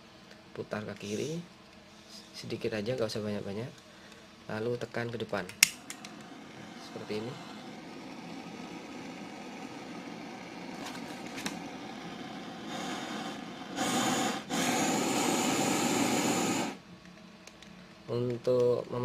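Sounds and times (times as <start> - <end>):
gas torch flame hissing: 5.6 - 16.8.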